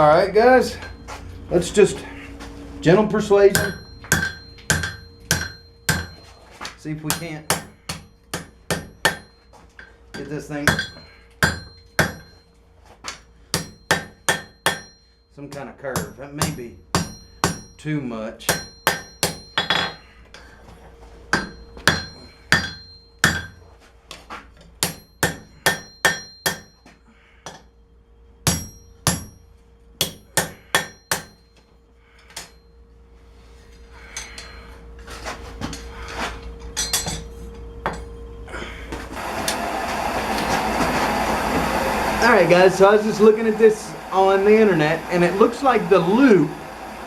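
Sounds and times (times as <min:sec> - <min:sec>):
hammer striking steel on anvil: 0:03.5 - 0:12.4, 0:13.5 - 0:20.5, 0:21.3 - 0:23.6, 0:24.8 - 0:27.7, 0:28.4 - 0:31.6, 0:36.6 - 0:38.1
steady rushing noise: 0:39.2 - 0:47.0.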